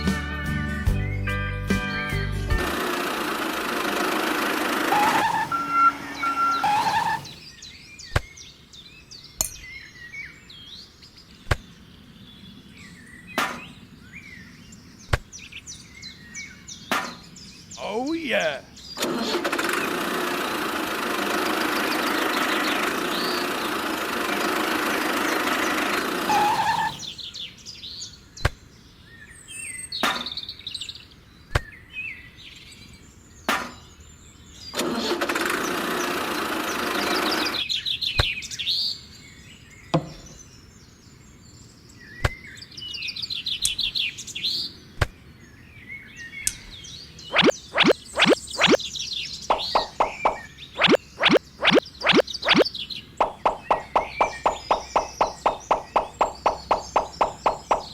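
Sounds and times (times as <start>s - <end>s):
small motor running: 2.8s - 5.8s, 6.6s - 7.4s, 26.2s - 27.2s
birds chirping: 4.6s - 10.8s, 12.0s - 19.0s, 25.1s - 28.2s, 45.4s - 57.9s
sharp clicks: 47.4s - 48.8s, 49.5s - 57.9s.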